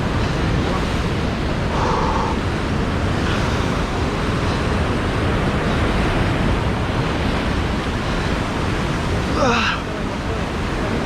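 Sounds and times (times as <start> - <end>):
surf washing against rocks: 0.0 - 11.0
wind rumbling on microphone: 0.0 - 11.0.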